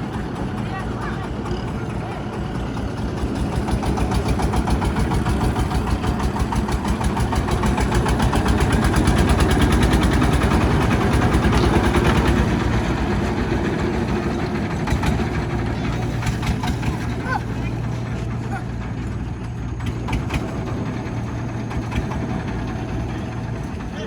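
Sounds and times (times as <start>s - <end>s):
heavy diesel engine running: 0.0s - 24.0s.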